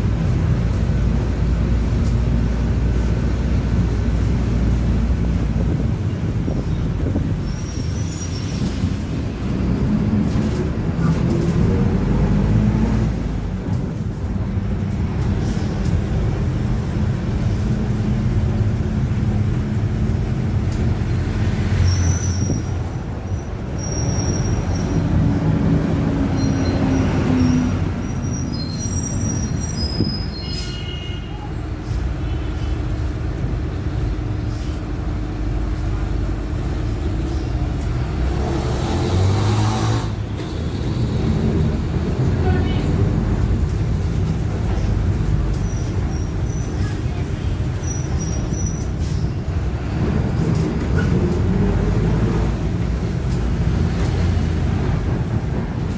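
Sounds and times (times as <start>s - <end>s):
bus diesel engine running: 0.0s - 30.4s, 31.4s - 55.9s
high squeals: 7.4s - 8.8s, 26.1s - 31.6s.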